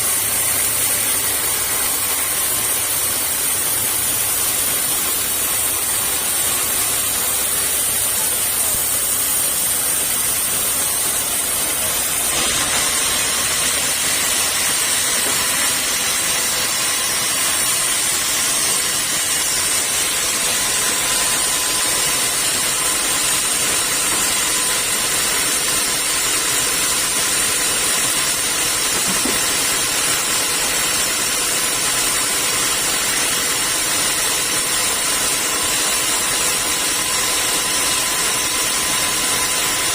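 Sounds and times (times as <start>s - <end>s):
sawmill machinery hissing: 0.0s - 39.9s.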